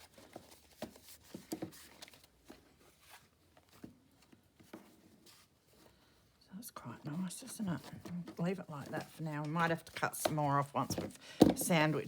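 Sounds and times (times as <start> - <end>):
paper sheets rustling: 6.8 - 12.0.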